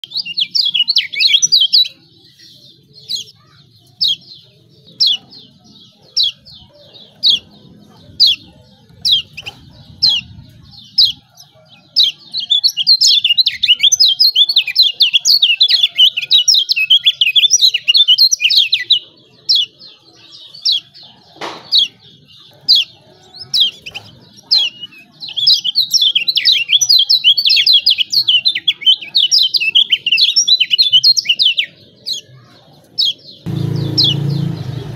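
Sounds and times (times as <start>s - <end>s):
bird chirping and twittering: 0.0s - 34.9s.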